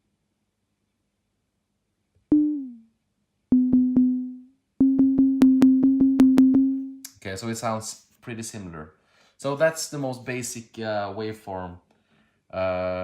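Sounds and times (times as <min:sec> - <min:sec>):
low synthesizer sine notes: 0:02.3 - 0:02.9, 0:03.5 - 0:07.0.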